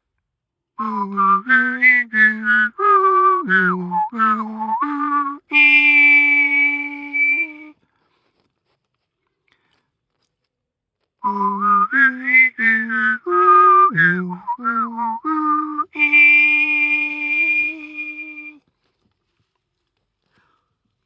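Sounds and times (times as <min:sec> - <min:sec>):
person whistling chime melodies: 0:11.2 - 0:18.6.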